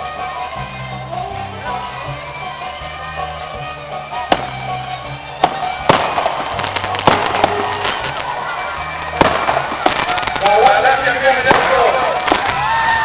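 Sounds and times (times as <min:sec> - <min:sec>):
background music with bass: 0:00.0 - 0:13.0
fireworks bangs and pops: 0:04.2 - 0:13.0.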